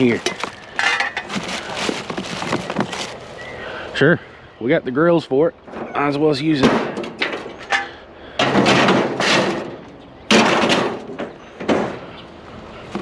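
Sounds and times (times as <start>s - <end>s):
junk crashing down: 8.4s - 12.0s.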